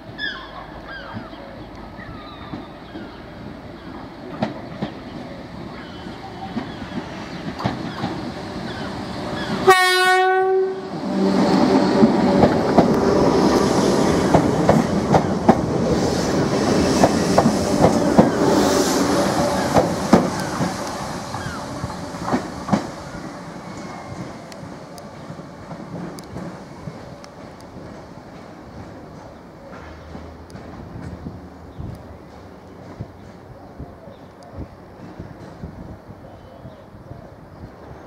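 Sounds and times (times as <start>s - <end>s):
train motor hum: 3.4s - 27.9s
train wheels clacking over rail joints: 6.4s - 9.7s, 11.4s - 33.5s
train horn blast: 9.6s - 11.5s.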